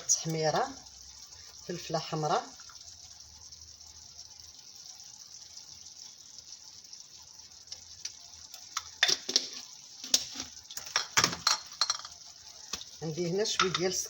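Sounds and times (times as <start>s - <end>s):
meat and onions sizzling: 0.0s - 14.0s.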